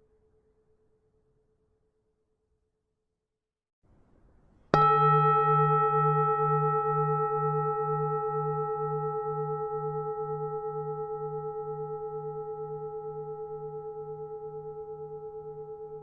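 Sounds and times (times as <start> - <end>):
temple bell ringing: 4.8 - 12.1.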